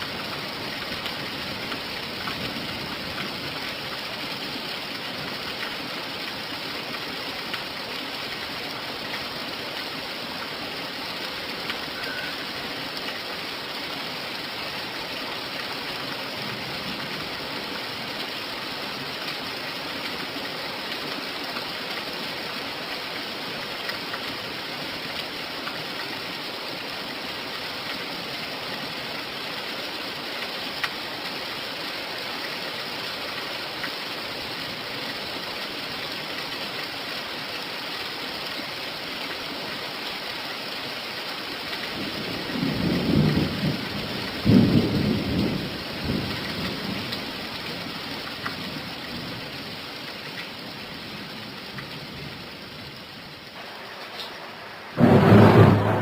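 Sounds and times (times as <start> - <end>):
rain falling: 0.0 - 56.0
thunder rumbling: 42.4 - 47.1, 53.6 - 56.0.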